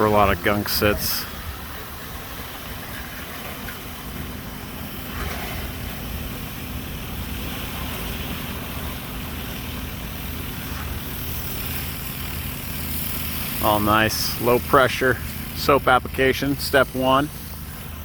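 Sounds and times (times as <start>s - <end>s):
pressure washer engine running: 0.0s - 18.0s
hiss of spray wand: 16.4s - 18.0s.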